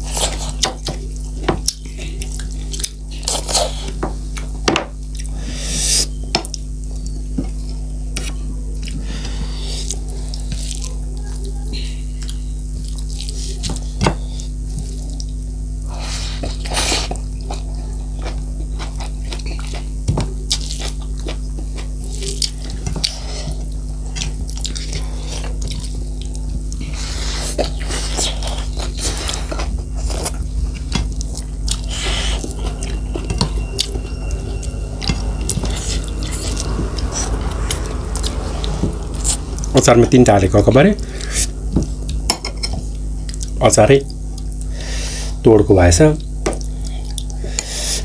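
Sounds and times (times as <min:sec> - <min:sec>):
low electrical hum: 0:00.0 - 0:48.0
chewing: 0:16.2 - 0:32.8.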